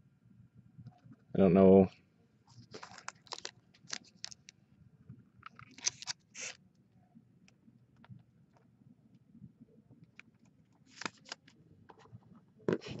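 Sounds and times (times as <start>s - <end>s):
trading cards rustling: 2.6s - 4.5s, 5.5s - 6.6s, 10.9s - 11.5s.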